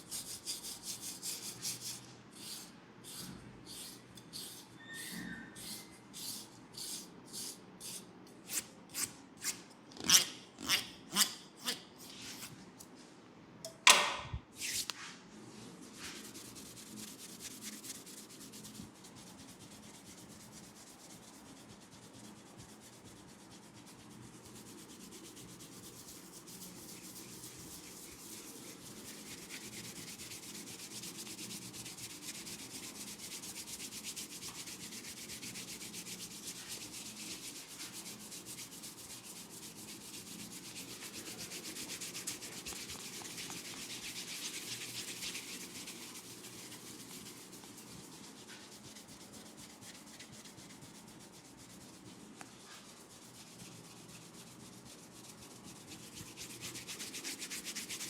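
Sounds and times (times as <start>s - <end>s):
fingers rustling through hair: 16.0s - 58.0s.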